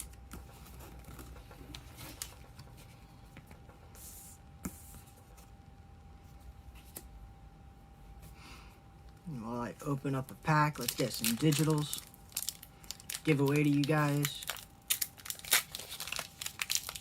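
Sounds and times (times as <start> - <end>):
packaging rustling: 10.7 - 17.0.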